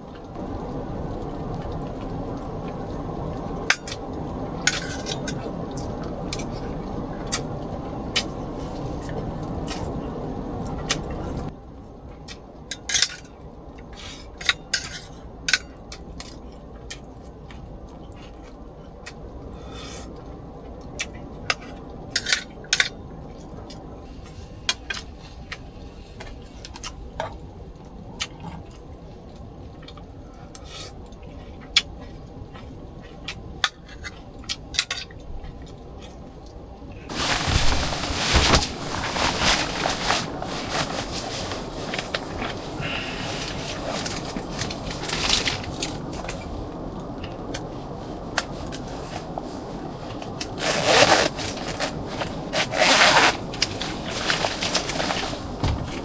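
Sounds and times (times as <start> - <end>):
kitchenware clinking: 4.7 - 6.6
steady hiss: 37.0 - 56.0.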